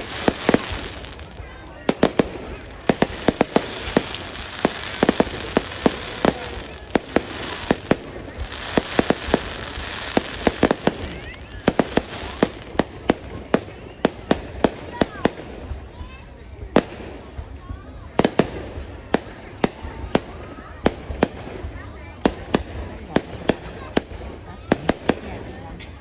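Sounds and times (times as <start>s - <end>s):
crackling hiss: 0.0s - 15.7s
fireworks banging: 0.0s - 26.0s.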